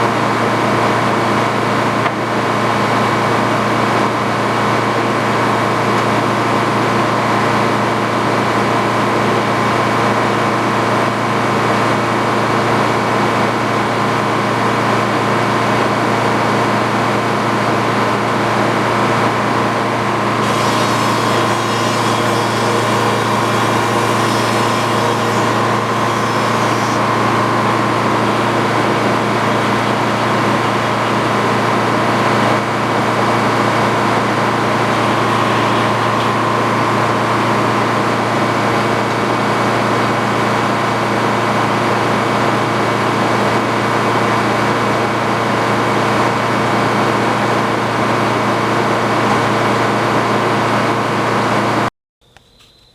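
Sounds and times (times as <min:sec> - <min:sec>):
sawmill machinery running: 0:00.0 - 0:51.9
high-pitched machine whine: 0:19.9 - 0:38.6.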